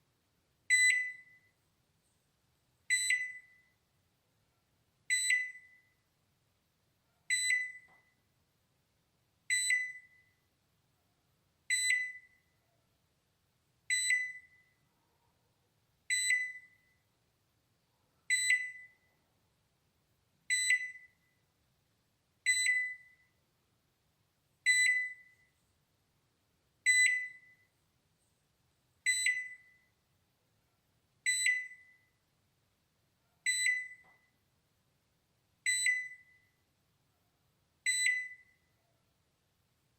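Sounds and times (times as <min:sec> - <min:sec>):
microwave alarm beeping: 0:00.7 - 0:01.5, 0:02.9 - 0:03.8, 0:05.1 - 0:06.0, 0:07.3 - 0:08.1, 0:09.5 - 0:10.4, 0:11.7 - 0:12.5, 0:13.9 - 0:14.7, 0:16.1 - 0:17.0, 0:18.3 - 0:19.0, 0:20.5 - 0:21.3, 0:22.5 - 0:23.3, 0:24.7 - 0:25.5, 0:26.8 - 0:27.7, 0:29.1 - 0:29.9, 0:31.2 - 0:32.1, 0:33.5 - 0:34.3, 0:35.6 - 0:36.6, 0:37.8 - 0:38.7.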